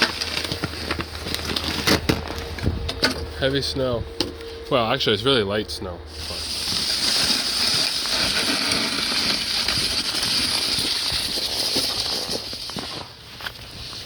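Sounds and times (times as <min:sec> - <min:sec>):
snow shovel scraping snow: 0:06.1 - 0:14.0.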